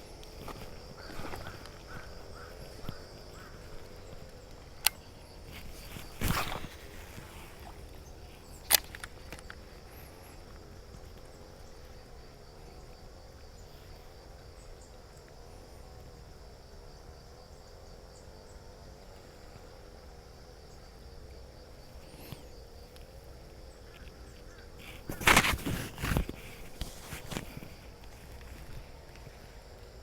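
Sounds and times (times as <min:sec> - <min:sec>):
insect chorus: 0:00.0 - 0:30.0
sharp click: 0:04.8 - 0:05.0, 0:08.6 - 0:09.6.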